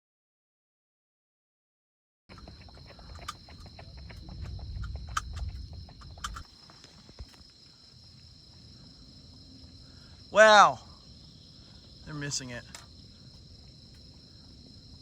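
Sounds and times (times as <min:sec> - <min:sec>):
low rumble: 0:02.3 - 0:07.4
crickets chirring: 0:02.3 - 0:15.0
sharp clicks: 0:03.1 - 0:06.5.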